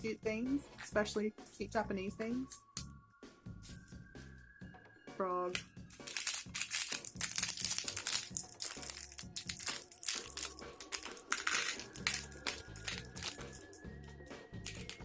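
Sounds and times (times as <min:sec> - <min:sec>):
candy packaging crinkling: 0:05.5 - 0:13.9, 0:14.6 - 0:15.0.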